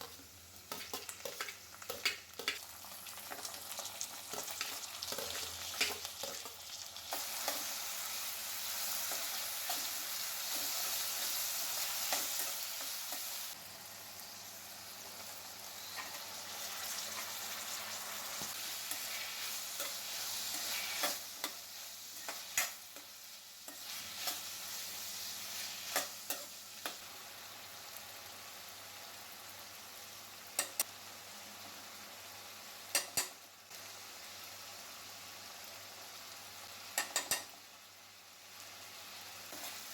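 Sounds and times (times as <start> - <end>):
food sizzling in hot oil: 0.0 - 39.9
spatula clicking against pan: 30.6 - 30.9, 36.9 - 37.5.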